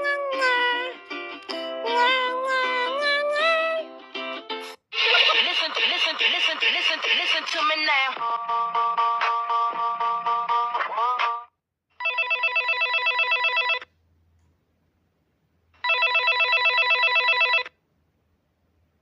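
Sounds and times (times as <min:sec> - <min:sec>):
telephone ringing: 0:12.0 - 0:13.9, 0:15.8 - 0:17.8.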